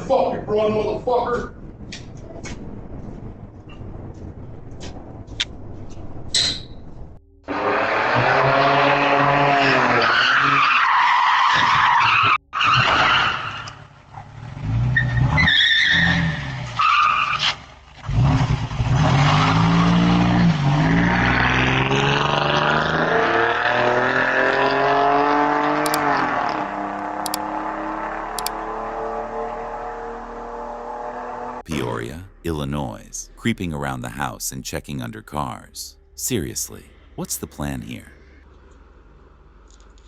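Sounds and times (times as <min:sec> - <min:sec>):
car engine revving: 0:07.4 - 0:10.5, 0:18.0 - 0:31.6.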